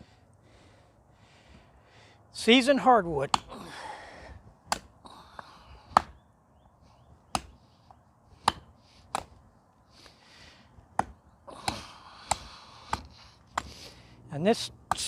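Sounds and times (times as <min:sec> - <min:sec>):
machete chopping wood: 0:03.3 - 0:03.6, 0:04.7 - 0:04.9, 0:05.9 - 0:06.2, 0:07.3 - 0:07.6, 0:08.4 - 0:09.4, 0:10.9 - 0:13.8.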